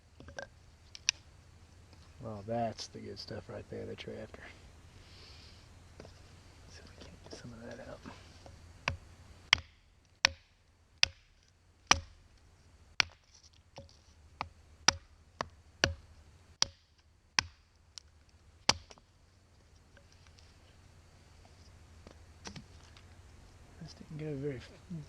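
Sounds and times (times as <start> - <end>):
hatchet chopping wood: 8.4 - 12.3, 13.0 - 18.1, 18.7 - 19.0.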